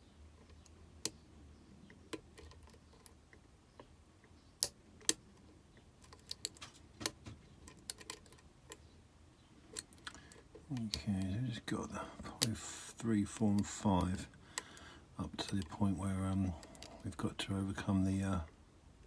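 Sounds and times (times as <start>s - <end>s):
lock pick clicking: 6.0s - 8.8s.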